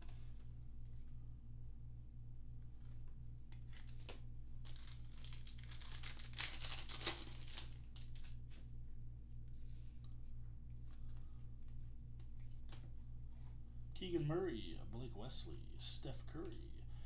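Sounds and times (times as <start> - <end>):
low electrical hum: 0.0 - 17.0
foil wrapper tearing and crinkling: 3.5 - 8.4.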